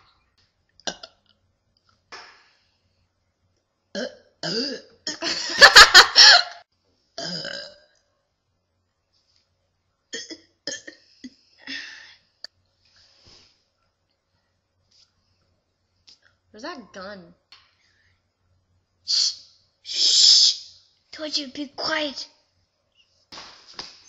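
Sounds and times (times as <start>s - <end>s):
person burping: 0.8s - 1.4s, 3.9s - 5.3s, 7.2s - 8.0s, 10.1s - 11.4s.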